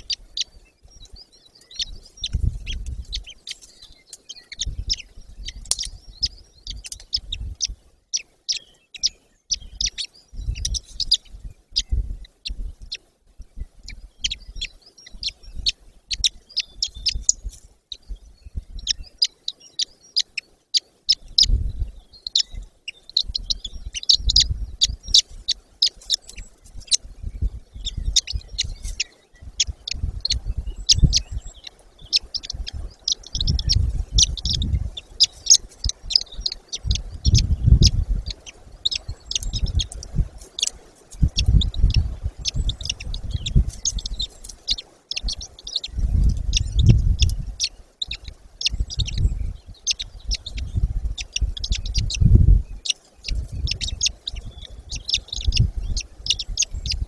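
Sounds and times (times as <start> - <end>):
high bird chirps and peeps: 0.0 - 57.0
low rumbling: 29.4 - 35.2, 35.8 - 40.4.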